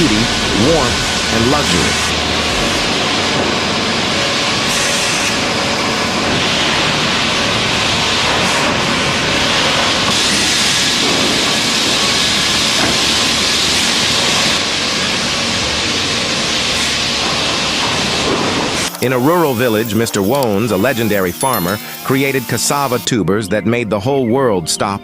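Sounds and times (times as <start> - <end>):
wood machining hiss: 18.8 - 23.1.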